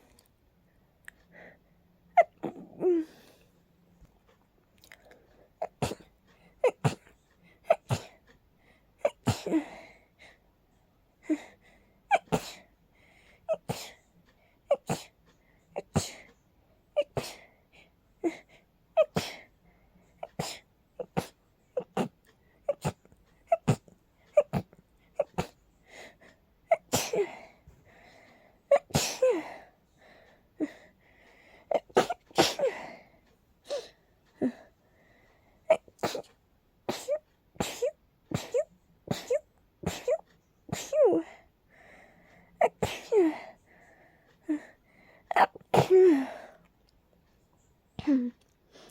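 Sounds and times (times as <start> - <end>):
breaths: 1.2 - 1.8, 8.6 - 9.0, 11.3 - 12.0, 12.9 - 13.5, 25.8 - 26.5, 27.2 - 28.7, 29.4 - 31.7, 32.7 - 35.7, 41.2 - 42.6, 43.2 - 45.3, 46.1 - 46.7, 48.6 - 48.9.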